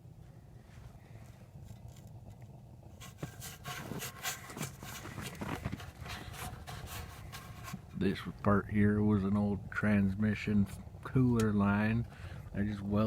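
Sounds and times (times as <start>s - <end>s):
oil burner rumbling: 0.0s - 13.0s
scraping and rubbing clicks: 3.0s - 7.9s.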